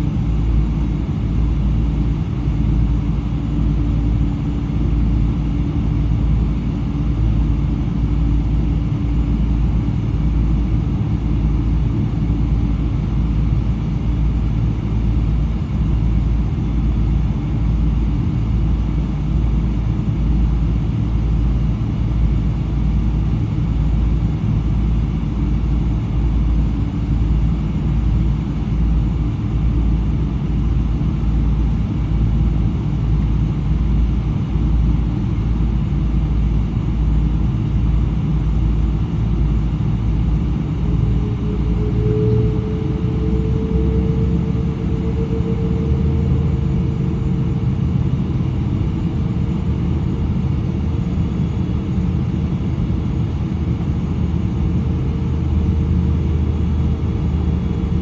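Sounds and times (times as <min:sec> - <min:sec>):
faint hum: 0:00.0 - 0:58.0
jet engine rumble in cabin: 0:00.0 - 0:58.0.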